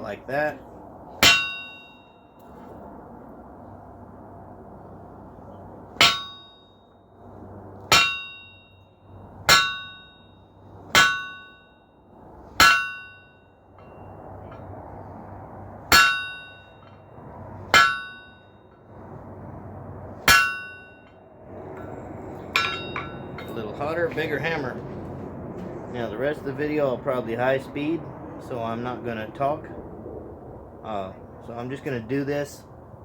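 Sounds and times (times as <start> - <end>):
hammer clanging on steel anvil: 1.2 - 2.2, 6.0 - 6.6, 7.9 - 8.8, 9.5 - 10.2, 10.9 - 11.7, 12.6 - 14.0, 15.9 - 16.9, 17.8 - 18.4, 20.3 - 21.1, 22.5 - 23.8.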